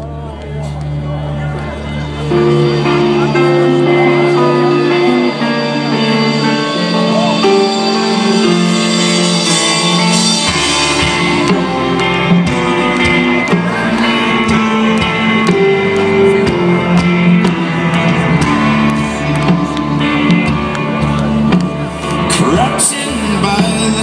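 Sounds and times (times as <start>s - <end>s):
folk-rock band playing: 0.0s - 24.0s.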